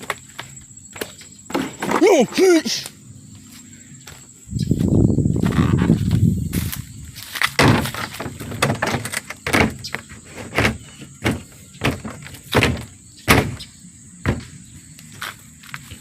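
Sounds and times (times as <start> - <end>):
sharp knocks: 7.6 - 9.9, 10.5 - 13.6.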